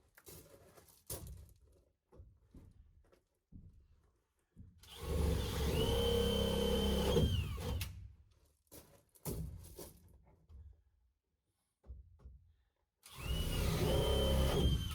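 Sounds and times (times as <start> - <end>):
power drill boring through wood: 4.9 - 7.8, 13.1 - 14.9.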